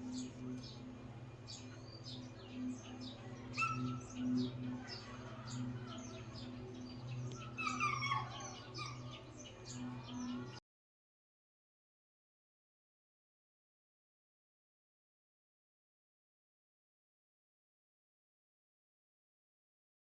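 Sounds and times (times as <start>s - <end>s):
small birds chirping: 0.0s - 10.6s
steady low hum: 0.0s - 10.6s.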